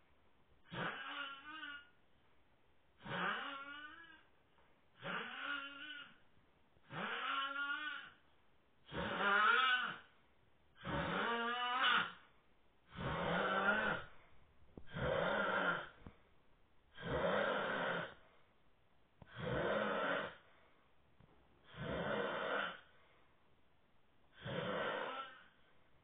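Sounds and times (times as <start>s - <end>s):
person snoring: 12.9s - 14.1s, 14.9s - 16.0s, 17.0s - 18.2s, 19.3s - 20.4s, 21.7s - 22.9s, 24.4s - 25.5s.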